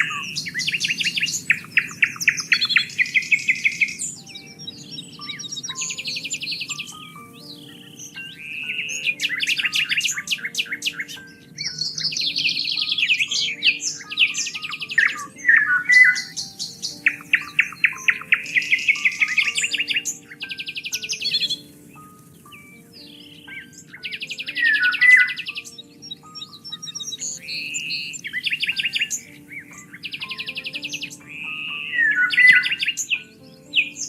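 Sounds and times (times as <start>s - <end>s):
songbirds singing: 0.0s - 34.0s.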